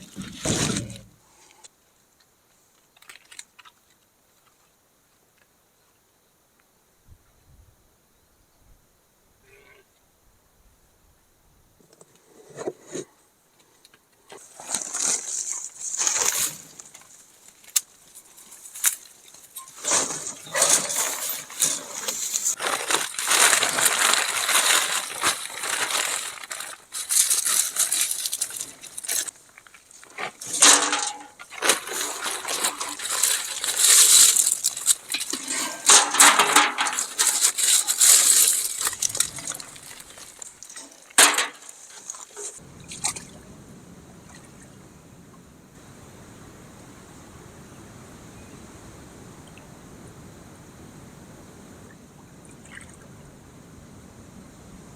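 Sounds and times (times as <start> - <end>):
sheep crunching feed: 20.0 - 41.4.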